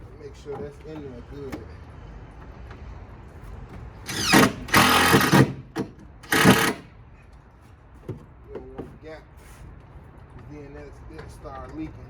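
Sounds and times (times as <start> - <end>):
power drill whirring: 4.1 - 6.9.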